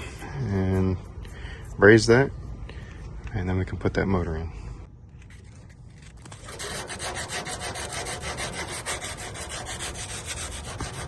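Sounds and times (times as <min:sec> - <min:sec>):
abrasive scrubbing copper pipe: 0:06.3 - 0:11.0.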